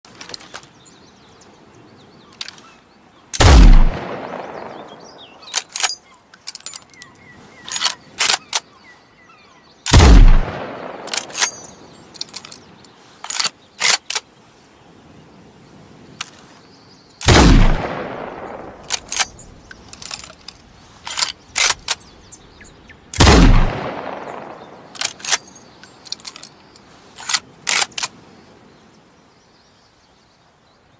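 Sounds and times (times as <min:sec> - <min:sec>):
rifle shots with echo: 0:03.4 - 0:05.6, 0:09.9 - 0:11.7, 0:17.2 - 0:19.4, 0:23.2 - 0:25.3
rifle bolt clicking: 0:05.5 - 0:07.1, 0:07.7 - 0:08.7, 0:11.0 - 0:12.6, 0:27.2 - 0:28.1.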